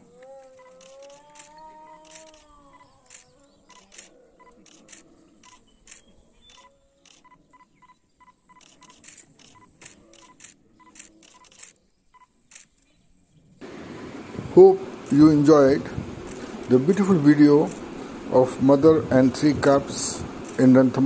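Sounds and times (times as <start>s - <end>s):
animal call: 0.0s - 8.0s
camera shutters clicking: 0.1s - 7.4s, 8.5s - 11.8s, 12.5s - 12.9s, 16.2s - 18.1s, 20.4s - 20.8s.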